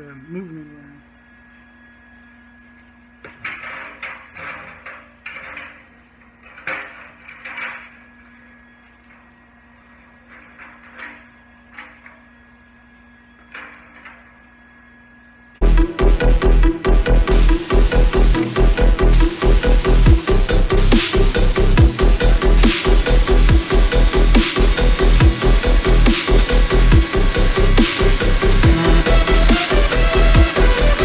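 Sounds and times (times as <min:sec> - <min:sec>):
metal knocks and scraping clatters: 0:03.2 - 0:12.7, 0:13.4 - 0:14.4
electrical hum: 0:08.0 - 0:31.0.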